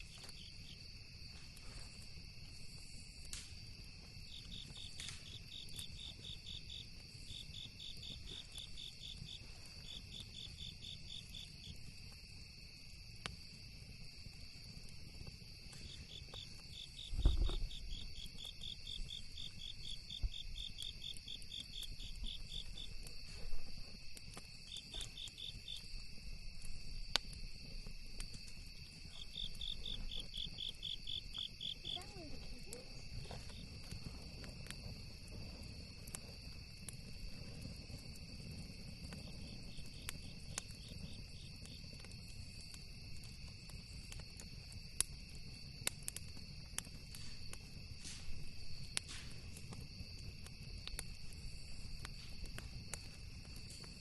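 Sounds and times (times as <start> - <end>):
campfire crackling: 0.0 - 54.0
cricket trilling: 0.0 - 54.0
insect drone: 0.0 - 54.0
low thump: 17.1 - 17.7.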